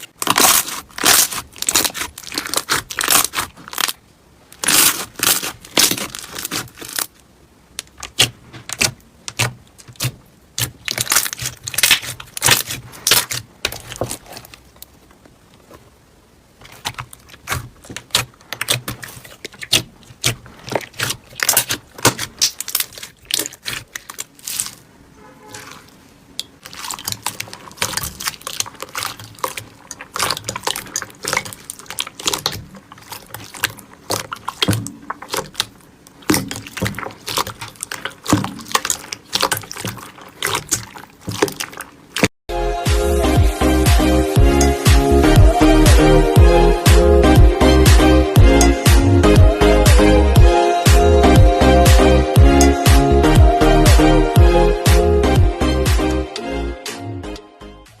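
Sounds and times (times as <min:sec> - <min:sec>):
slime squishing wet clicks: 0:16.6 - 0:24.8, 0:26.4 - 0:42.3.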